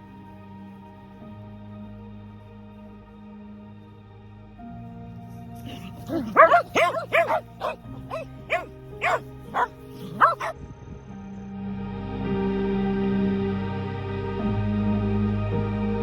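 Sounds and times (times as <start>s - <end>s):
background music: 0.0s - 10.5s
dogs barking: 5.6s - 10.5s.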